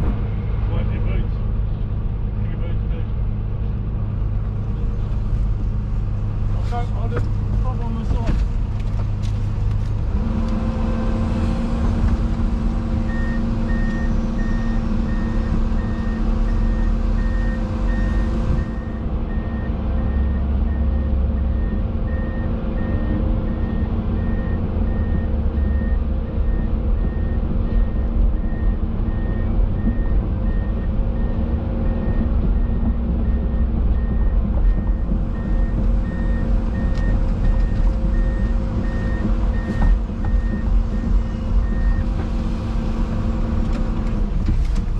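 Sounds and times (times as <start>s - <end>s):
heavy diesel engines running: 0.0s - 44.9s
reversing alarm beeping: 13.1s - 42.0s.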